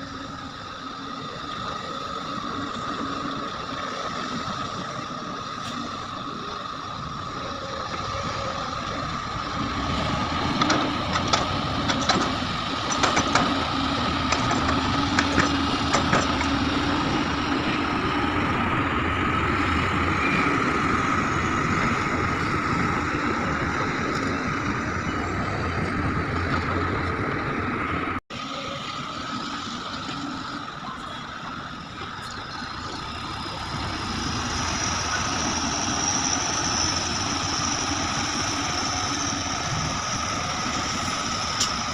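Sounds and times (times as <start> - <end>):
excavator diesel engine whining: 0.0 - 41.9.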